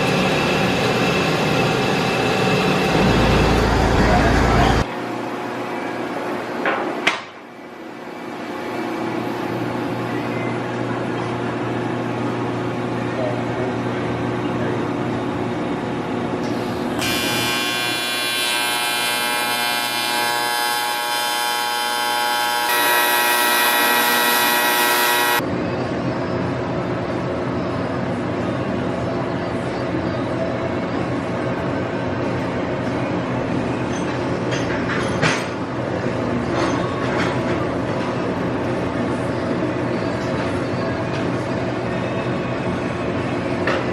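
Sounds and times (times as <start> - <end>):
machinery running: 0.0 - 6.6, 16.4 - 25.4
machinery humming and whining: 0.0 - 33.9.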